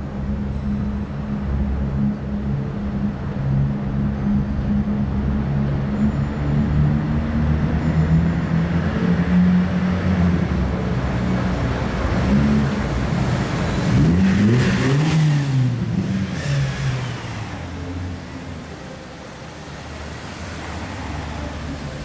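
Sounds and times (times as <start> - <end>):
vehicle engine revving: 5.0 - 18.1.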